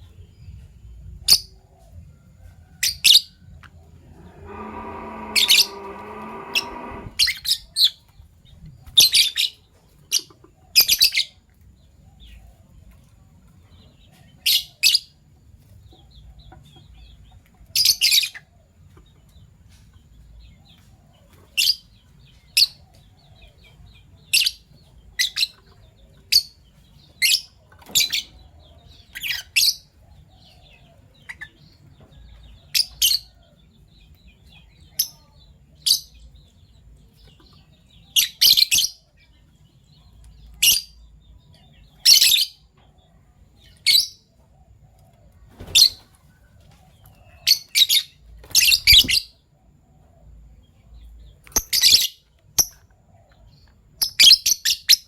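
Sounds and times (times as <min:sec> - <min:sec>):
lovebirds chirping shrilly: 0:04.0 - 0:08.0.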